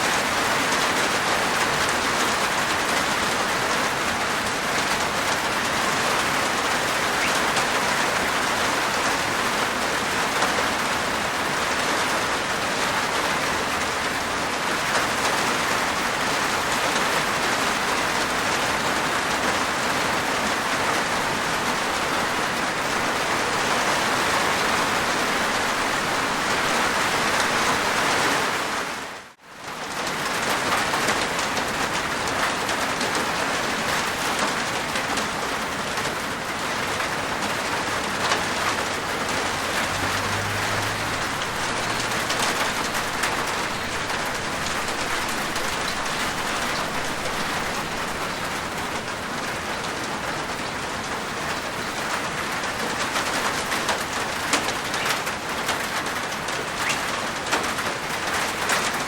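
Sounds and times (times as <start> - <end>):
rain on a rooftop: 0.0 - 59.0.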